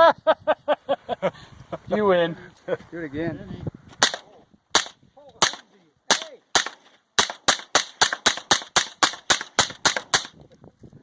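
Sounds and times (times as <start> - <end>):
gunshots: 4.0 - 10.4.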